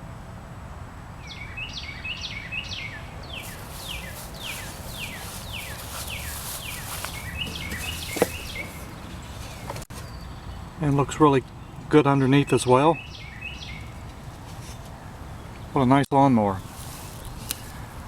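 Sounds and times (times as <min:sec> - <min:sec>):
bird singing: 0:01.2 - 0:14.2.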